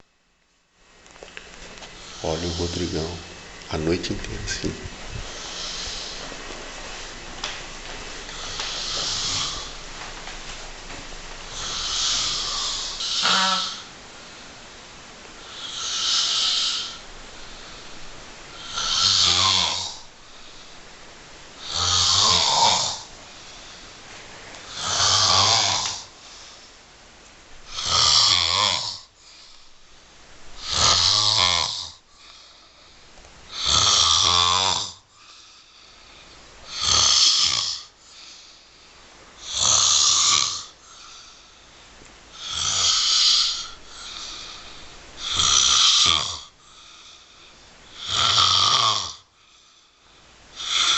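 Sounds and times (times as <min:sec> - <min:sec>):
person snoring loudly: 0:04.5 - 0:06.2, 0:08.3 - 0:09.8, 0:11.5 - 0:14.0, 0:15.4 - 0:17.0, 0:18.5 - 0:20.1, 0:21.6 - 0:23.1, 0:24.7 - 0:26.1, 0:27.6 - 0:29.5, 0:30.6 - 0:32.6, 0:33.5 - 0:35.5, 0:36.6 - 0:38.0, 0:39.4 - 0:41.4, 0:42.3 - 0:47.0, 0:47.9 - 0:49.3, 0:50.5 - 0:50.9
quiet breathing: 0:04.5 - 0:07.2, 0:07.9 - 0:10.0, 0:10.9 - 0:27.0, 0:28.9 - 0:30.8, 0:31.8 - 0:33.6, 0:34.8 - 0:39.5, 0:40.2 - 0:48.3, 0:49.2 - 0:50.9.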